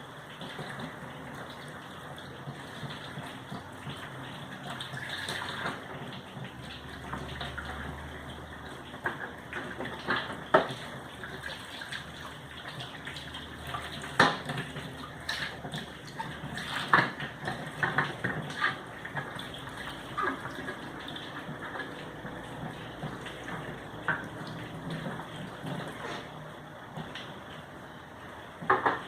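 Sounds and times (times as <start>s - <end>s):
water running: 0.0s - 29.0s
sharp knocks and clatters: 28.6s - 29.0s.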